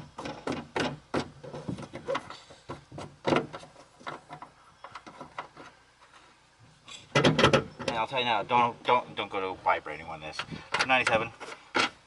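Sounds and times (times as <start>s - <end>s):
plastic taillight clicks and knocks: 0.0s - 5.7s, 7.1s - 8.0s.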